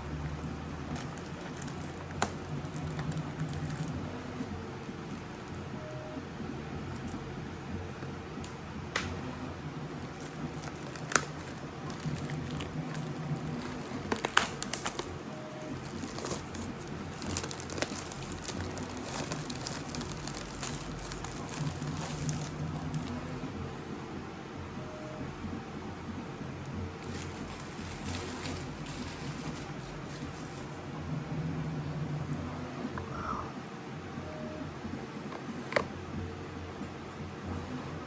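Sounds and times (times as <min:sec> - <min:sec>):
plastic packaging crinkling: 0:00.1 - 0:05.6, 0:09.9 - 0:23.3, 0:27.0 - 0:30.4.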